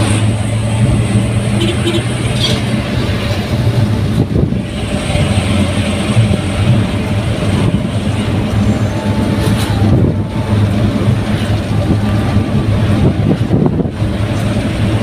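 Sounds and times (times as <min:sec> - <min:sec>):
road and tyre noise: 0:00.0 - 0:15.0
truck engine hum: 0:00.0 - 0:15.0.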